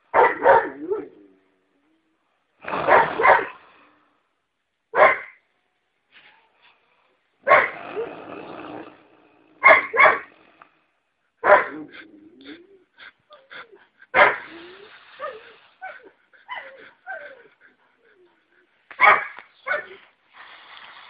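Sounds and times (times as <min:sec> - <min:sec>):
man snoring loudly: 0:02.6 - 0:04.0, 0:07.7 - 0:09.6.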